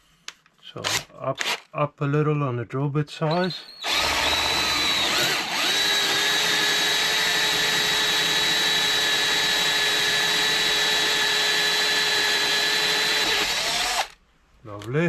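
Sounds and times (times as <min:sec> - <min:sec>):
electric drill boring metal: 0:03.3 - 0:14.2.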